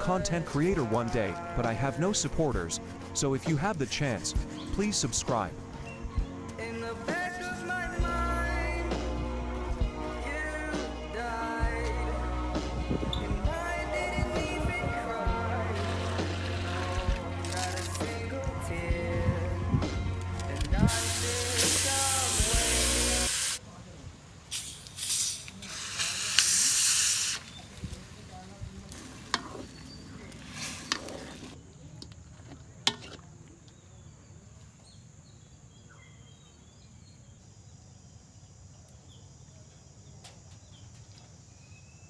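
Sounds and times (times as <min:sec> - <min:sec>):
chicken sizzling in a pan: 0:20.9 - 0:23.6.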